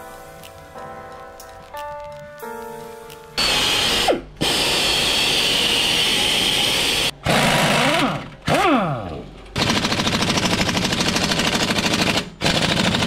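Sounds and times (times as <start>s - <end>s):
music: 0.0s - 4.4s
power tool running: 3.4s - 13.0s.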